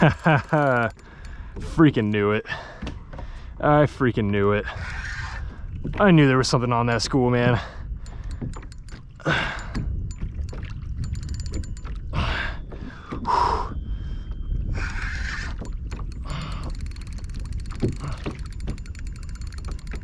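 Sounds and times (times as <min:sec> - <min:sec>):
spinning reel clicking: 0:00.0 - 0:01.4, 0:08.0 - 0:11.9, 0:14.8 - 0:20.0.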